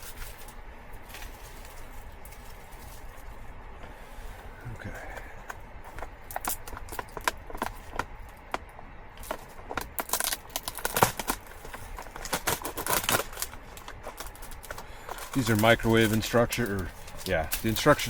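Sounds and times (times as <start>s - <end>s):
food packaging crinkling: 9.2s - 18.0s.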